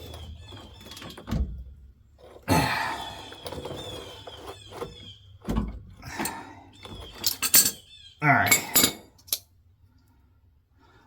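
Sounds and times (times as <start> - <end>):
metal tools clinking and clattering: 6.1 - 9.4.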